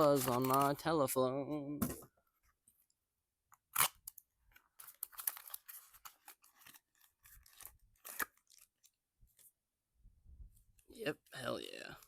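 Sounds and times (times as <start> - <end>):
cardboard and plastic rustling: 0.0 - 0.9.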